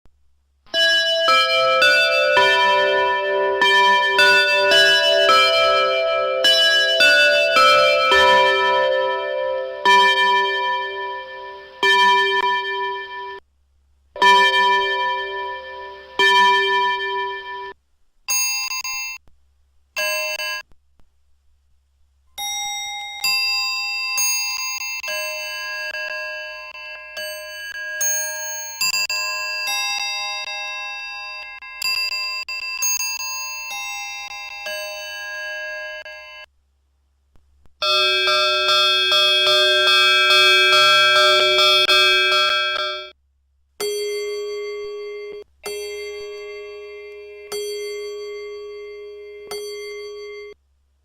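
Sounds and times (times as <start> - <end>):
clock chiming: 0.7 - 13.4, 14.2 - 19.2, 37.8 - 43.2, 43.8 - 50.6.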